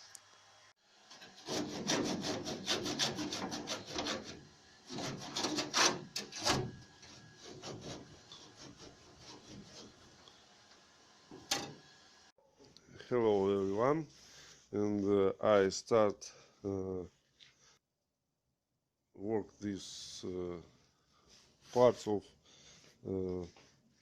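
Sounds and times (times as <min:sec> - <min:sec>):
hand tool rasping at metal: 0:01.2 - 0:10.0.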